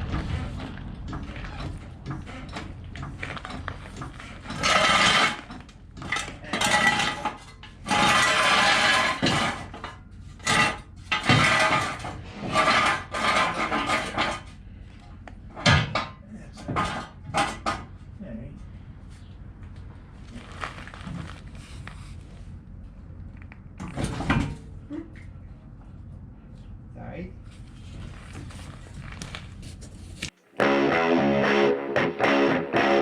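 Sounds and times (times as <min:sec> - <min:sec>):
metal hand tools clanking: 0:04.4 - 0:14.5
soft shuffling: 0:27.4 - 0:30.4.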